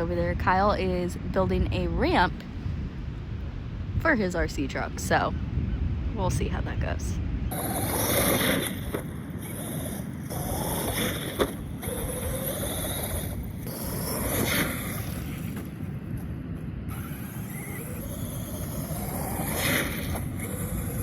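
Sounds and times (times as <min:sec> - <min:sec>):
steady rushing noise: 0:01.2 - 0:21.0
toy truck motor whining: 0:07.5 - 0:16.3, 0:16.9 - 0:21.0.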